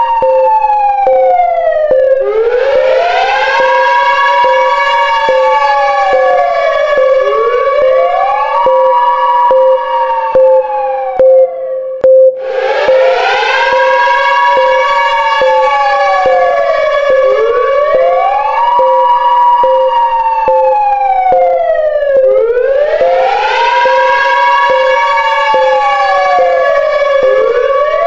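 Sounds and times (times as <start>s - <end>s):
air-raid siren wailing: 0.0s - 28.0s
pulsing tone with clicks: 0.0s - 28.0s.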